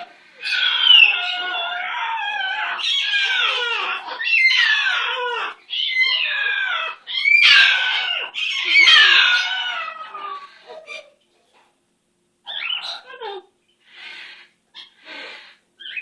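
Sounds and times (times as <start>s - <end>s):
parrot squawking: 12.5s - 16.0s.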